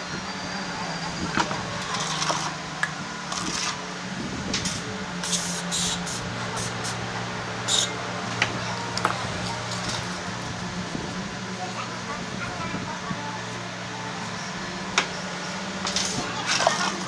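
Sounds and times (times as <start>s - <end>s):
low machine hum: 0.0s - 17.0s
short hissing bursts: 5.2s - 7.1s, 7.7s - 7.9s.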